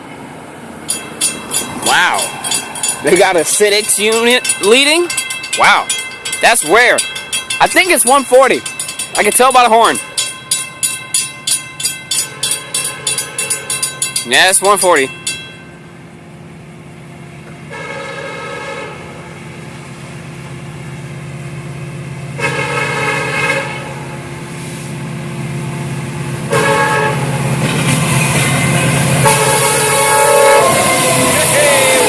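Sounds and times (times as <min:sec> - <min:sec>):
diesel engine hum: 0:00.0 - 0:32.0
locomotive air horn: 0:17.7 - 0:19.2, 0:22.4 - 0:24.9, 0:26.5 - 0:27.4, 0:29.2 - 0:32.0.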